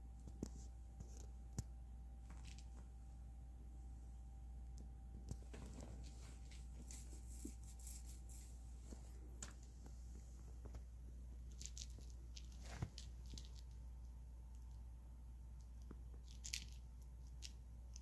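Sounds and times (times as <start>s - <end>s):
steady low hum: 0.0s - 18.0s
cat scuffling with toy: 5.5s - 9.2s, 11.5s - 13.6s.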